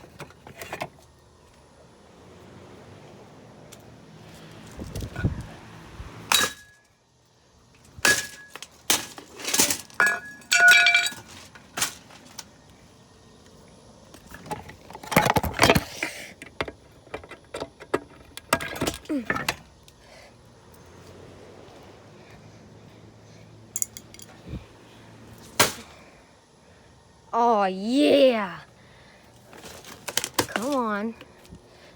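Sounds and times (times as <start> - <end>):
hammer smashing plastic fan: 8.0 - 12.0, 25.6 - 25.9.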